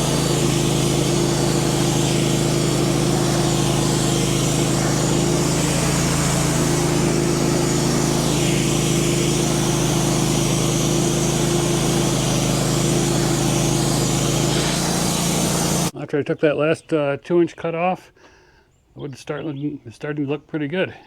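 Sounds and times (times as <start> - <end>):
band saw blade cutting wood: 0.0 - 15.9
sawmill engine running: 0.0 - 15.9.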